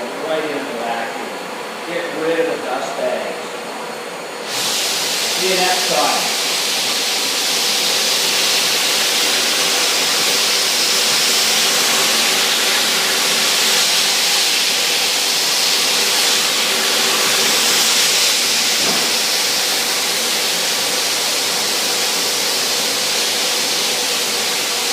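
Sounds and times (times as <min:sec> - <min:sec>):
faint constant hum: 0:00.0 - 0:04.5
vacuum and floor sander hissing: 0:04.3 - 0:24.9.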